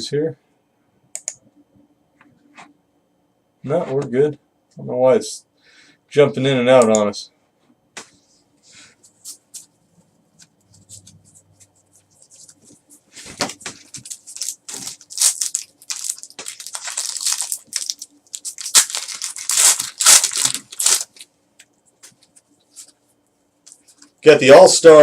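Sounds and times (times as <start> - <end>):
card wrappers crinkling and tearing: 12.2 - 21.3.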